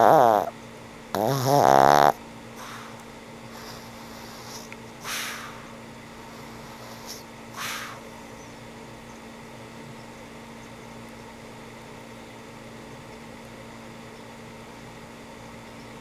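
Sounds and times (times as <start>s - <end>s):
low electrical hum: 0.0s - 16.0s
even hiss: 3.6s - 8.1s.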